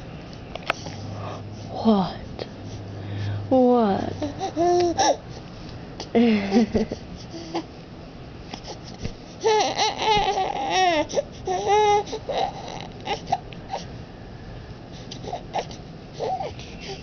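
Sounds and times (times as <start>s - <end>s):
baby cooing: 9.4s - 13.8s.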